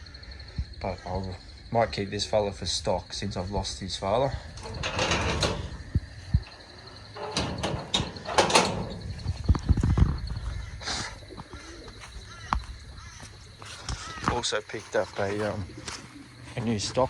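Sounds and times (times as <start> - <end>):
knocks and clatters: 4.5 - 10.2.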